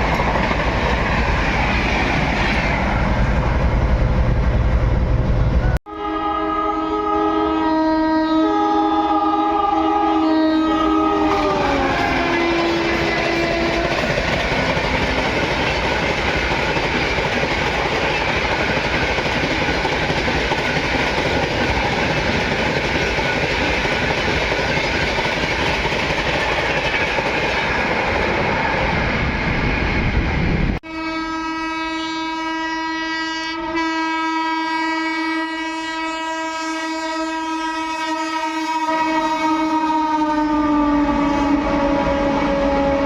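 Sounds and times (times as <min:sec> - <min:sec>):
train wheels rumbling and clattering: 0:00.0 - 0:05.8, 0:11.1 - 0:30.8
locomotive horn blast: 0:05.8 - 0:14.3, 0:30.8 - 0:43.0.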